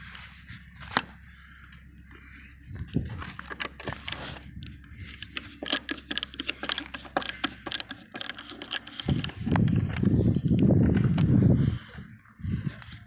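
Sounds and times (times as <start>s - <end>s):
tools clicking on metal: 5.1s - 10.1s.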